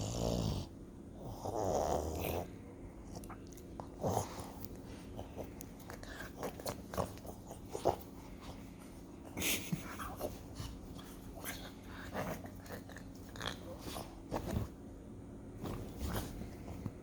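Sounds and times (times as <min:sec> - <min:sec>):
dog mouth and breathing noises: 0:02.2 - 0:14.7.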